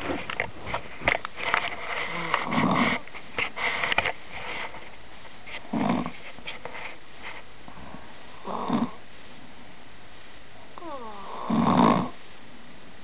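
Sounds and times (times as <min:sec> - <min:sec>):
woman snoring: 0:08.4 - 0:09.0, 0:10.8 - 0:12.2.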